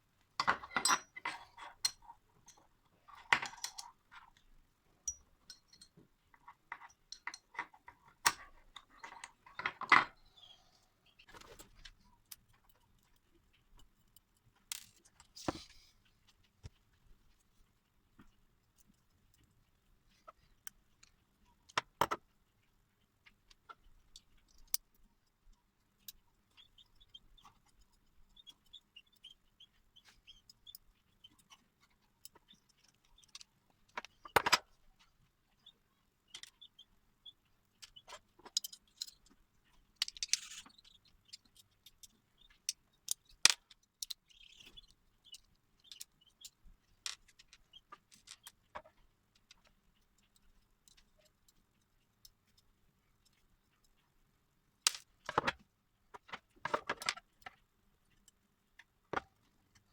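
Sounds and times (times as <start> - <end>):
metal tools clinking: 5.1 - 5.9.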